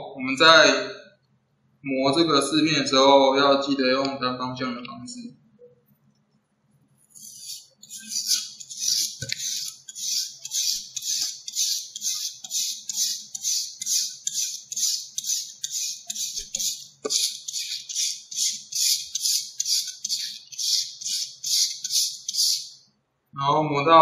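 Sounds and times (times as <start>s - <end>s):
sandpaper strokes on metal: 7.1s - 22.8s.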